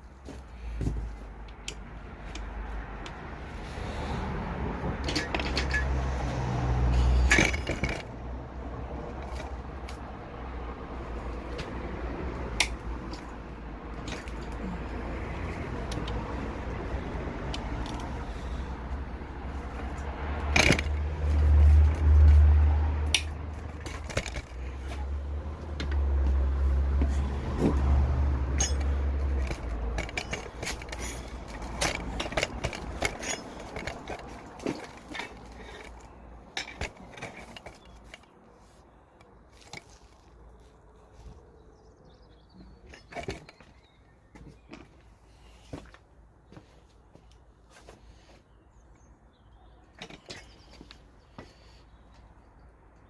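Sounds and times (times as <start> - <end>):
metallic clinks and scrapes: 5.0 - 6.2, 6.9 - 8.1, 28.5 - 38.3.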